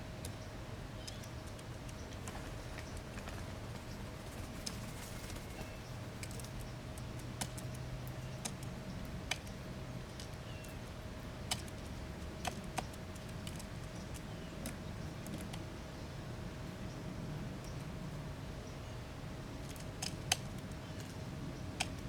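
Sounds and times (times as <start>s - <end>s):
steady low hum: 0.0s - 22.0s
sharp ticks and taps: 6.2s - 10.8s, 11.5s - 15.7s.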